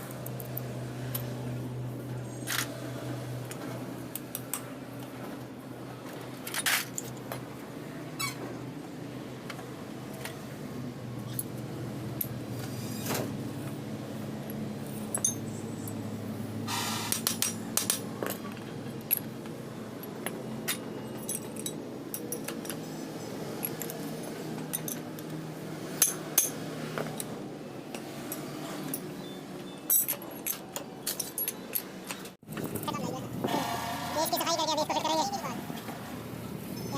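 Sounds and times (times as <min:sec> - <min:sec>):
metal parts clinking: 0:14.5 - 0:15.6, 0:20.0 - 0:22.9, 0:23.6 - 0:25.3, 0:29.8 - 0:32.9.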